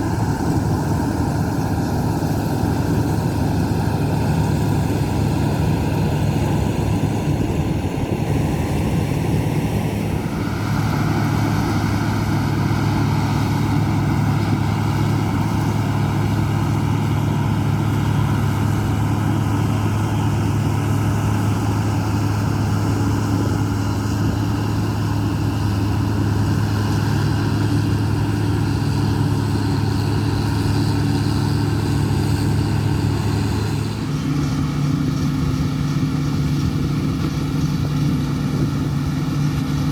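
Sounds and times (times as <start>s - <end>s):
diesel engine drone: 0.0s - 39.9s.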